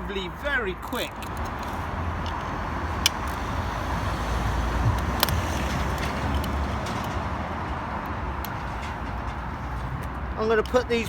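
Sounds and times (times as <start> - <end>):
road traffic rumble: 0.0 - 11.0
metal parts clicking: 0.8 - 3.5, 4.9 - 7.3, 8.0 - 10.9.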